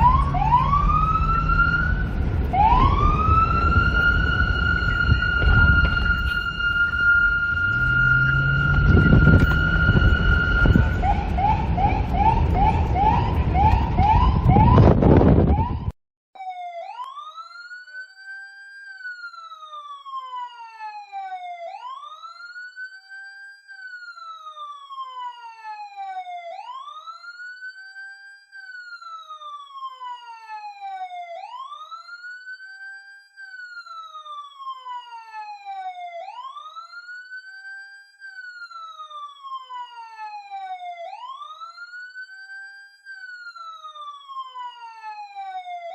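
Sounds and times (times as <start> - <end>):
loud rumbling noise: 0.0 - 15.6
fast yelping siren: 0.0 - 45.9
wailing siren: 0.0 - 45.9.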